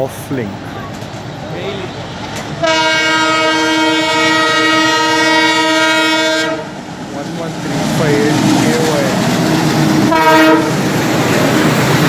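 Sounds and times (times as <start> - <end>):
train running noise: 0.0 - 12.0
locomotive horn blast: 2.6 - 6.7, 10.1 - 10.8.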